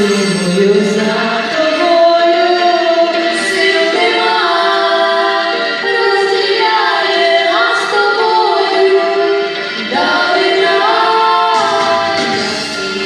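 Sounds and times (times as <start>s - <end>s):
women singing in harmony: 0.5s - 13.0s.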